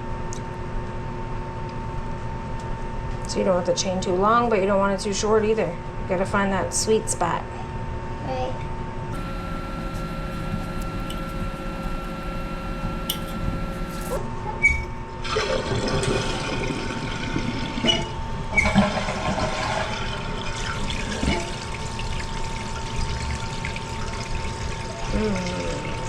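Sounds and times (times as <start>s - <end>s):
toilet flushing: 15.2s - 26.0s.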